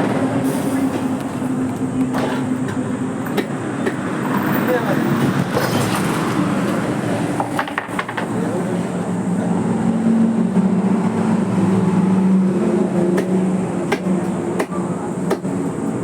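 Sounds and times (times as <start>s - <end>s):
sharp clicks and knocks: 7.4s - 8.4s.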